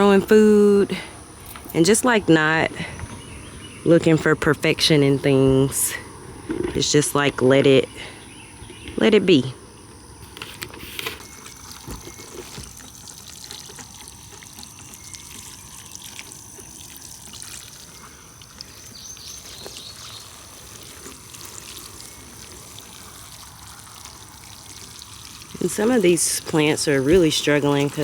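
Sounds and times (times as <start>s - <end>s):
water pouring onto plants: 10.7s - 28.0s
water splashes: 10.8s - 28.0s.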